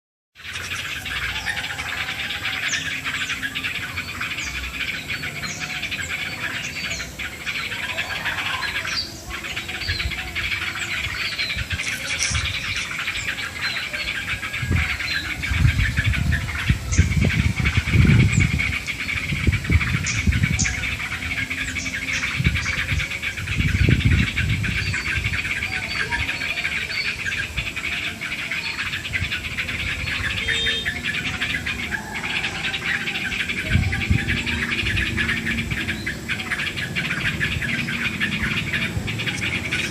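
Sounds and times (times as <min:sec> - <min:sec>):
chorus of small birds chirping: 0:00.4 - 0:39.9
low rumbles: 0:08.6 - 0:26.4, 0:29.0 - 0:39.9.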